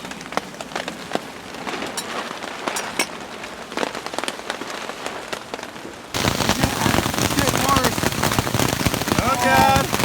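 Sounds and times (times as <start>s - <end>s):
heavy downpour: 0.0s - 10.0s
rain patter: 0.0s - 10.0s.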